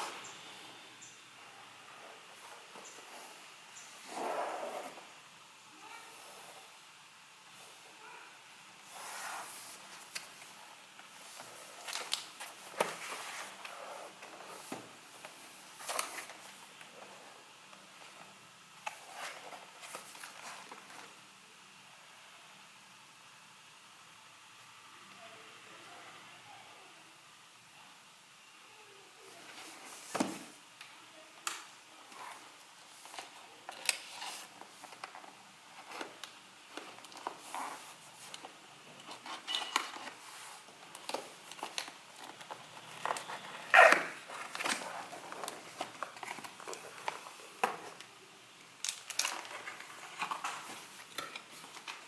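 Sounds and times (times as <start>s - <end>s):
packaging rustling and scraping: 8.8s - 21.1s, 32.1s - 48.1s, 48.8s - 52.0s.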